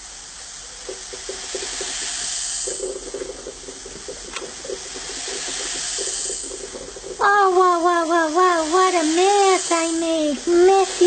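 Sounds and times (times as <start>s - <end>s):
liquid pouring from bottle: 0.8s - 9.8s.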